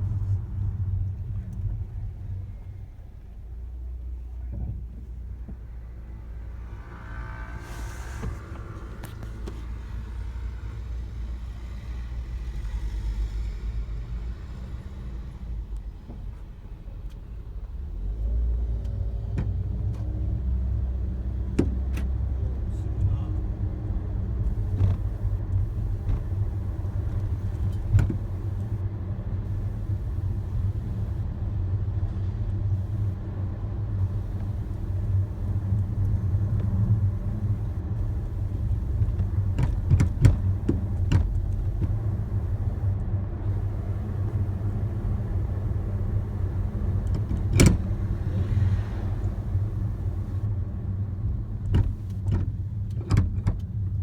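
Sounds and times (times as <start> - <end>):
road rumble: 0.0 - 54.0
suspension knocks and rattles: 24.3 - 28.8, 29.4 - 31.3, 32.8 - 50.5, 51.6 - 54.0.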